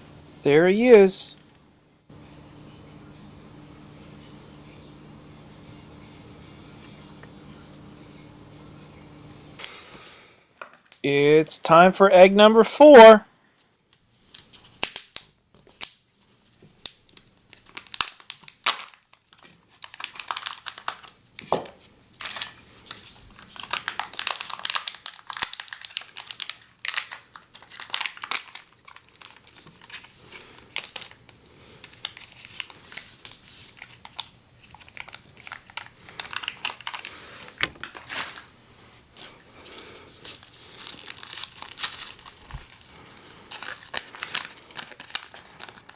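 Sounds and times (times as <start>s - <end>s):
foil wrapper crinkling: 13.4s - 38.5s, 39.2s - 45.9s.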